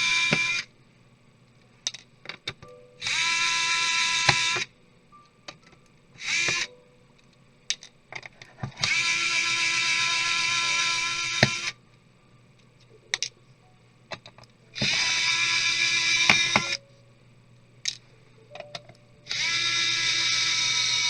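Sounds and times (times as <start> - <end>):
electric screwdriver motor: 0.0 - 0.7, 3.0 - 4.7, 6.2 - 6.7, 8.8 - 11.8, 14.8 - 16.8, 19.3 - 21.0.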